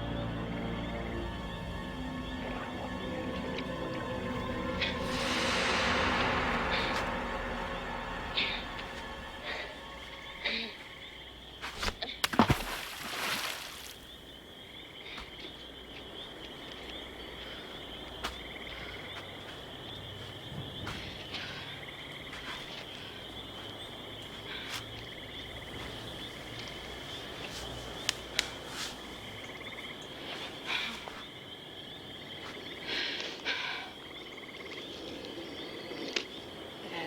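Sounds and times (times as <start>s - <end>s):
insects chirping: 0.0s - 37.0s
rushing burst of noise: 2.2s - 11.1s.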